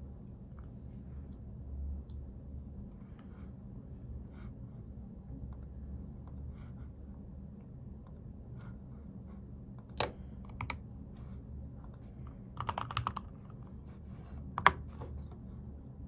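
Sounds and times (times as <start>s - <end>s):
low steady hum: 0.0s - 16.0s
keyboard keystrokes: 12.6s - 13.3s.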